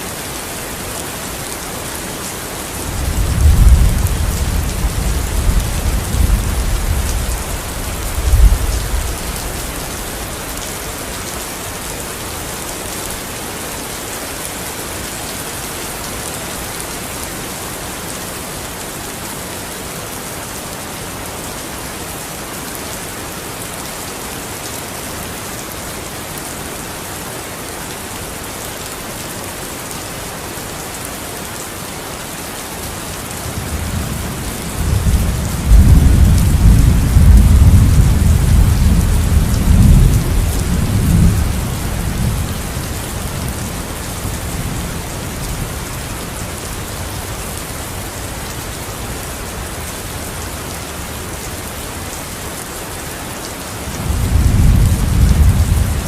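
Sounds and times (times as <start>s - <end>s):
heavy rain: 0.0s - 56.0s
thunder rumbling: 2.9s - 10.4s, 33.6s - 44.8s, 54.0s - 56.0s.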